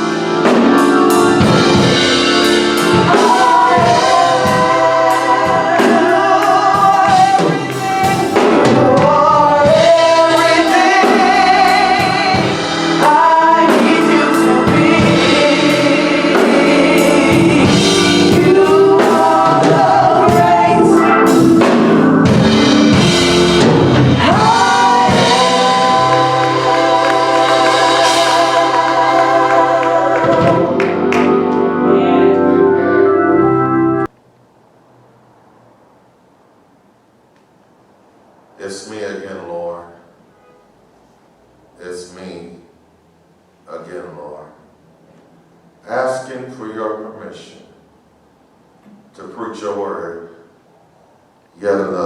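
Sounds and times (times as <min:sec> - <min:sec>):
drum kit and band: 0:00.0 - 0:32.2
gospel choir singing: 0:00.0 - 0:34.1.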